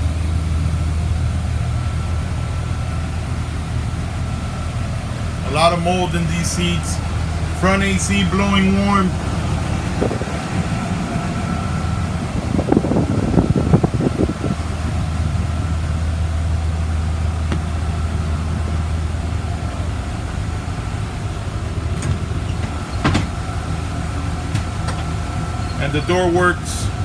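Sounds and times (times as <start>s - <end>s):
bus engine idling: 0.0s - 27.0s
bus door clicks: 16.9s - 26.6s
rattling knocks: 17.4s - 19.1s, 21.9s - 23.6s, 24.5s - 25.4s.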